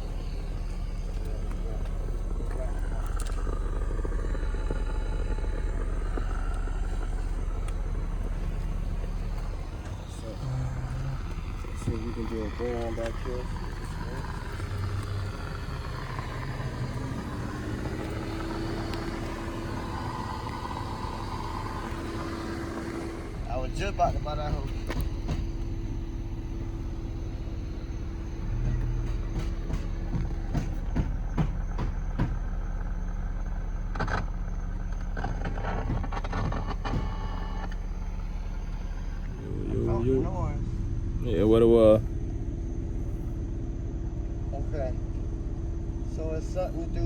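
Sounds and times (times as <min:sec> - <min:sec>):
car engine running: 0:00.0 - 0:47.0
steady low hum: 0:00.0 - 0:47.0
sharp clicks and knocks: 0:00.4 - 0:26.0, 0:28.4 - 0:38.3.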